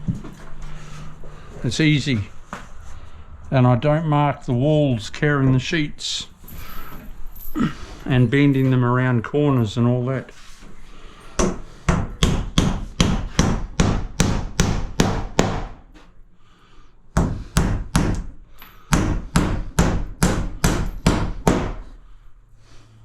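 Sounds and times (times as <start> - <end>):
hammer driving nails: 11.4 - 15.8, 17.2 - 21.9.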